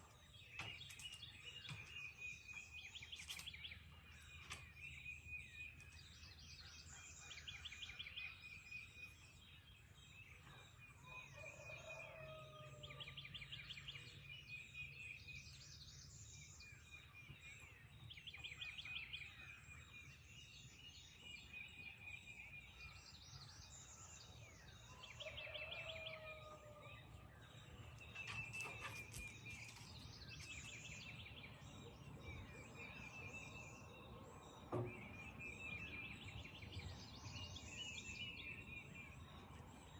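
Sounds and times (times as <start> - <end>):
birds chirping and whistling: 13.5 - 39.6.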